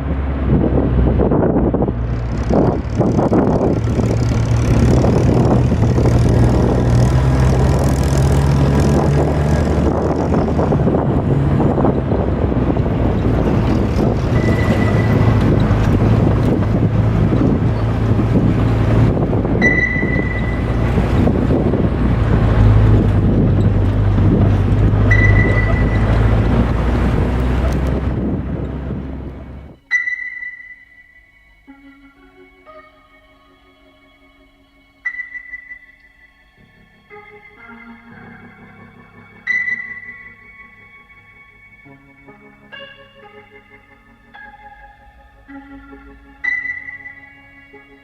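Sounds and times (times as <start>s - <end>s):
low rumble: 0.0s - 29.9s
wind buffeting microphone: 0.0s - 29.9s
faint high tone: 19.6s - 20.9s, 29.8s - 41.1s, 44.4s - 48.0s.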